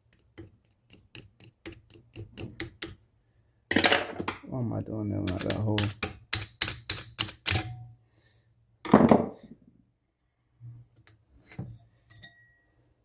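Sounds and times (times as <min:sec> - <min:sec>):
tools tapping engine parts: 0:05.2 - 0:07.8.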